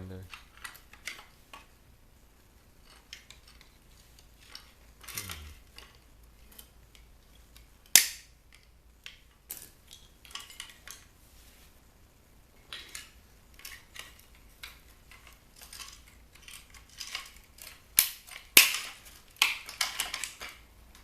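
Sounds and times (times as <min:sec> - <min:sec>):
sharp loud snap: 0:08.0 - 0:08.3
hand tools clicking on plastic: 0:12.7 - 0:21.0.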